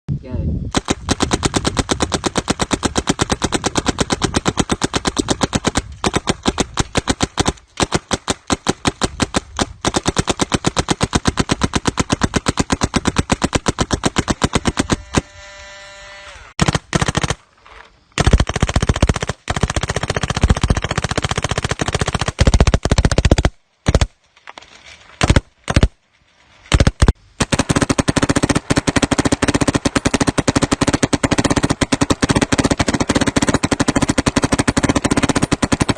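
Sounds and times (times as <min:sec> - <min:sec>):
paintball markers firing: 0:00.7 - 0:15.3, 0:26.7 - 0:35.9.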